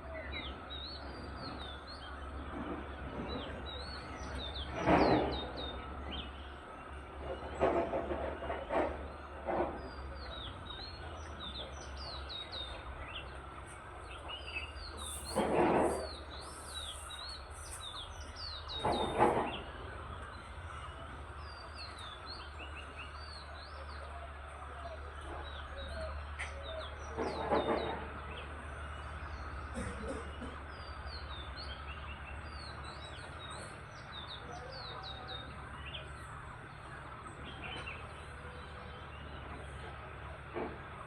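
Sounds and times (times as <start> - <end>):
small birds chirping: 9.8 - 40.5.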